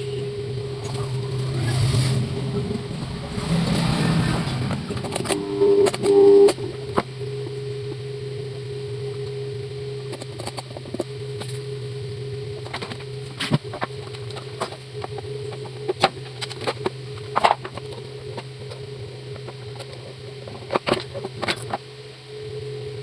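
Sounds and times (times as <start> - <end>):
steady low hum: 0.0 - 23.0
clicks and knocks of small parts: 19.4 - 21.8.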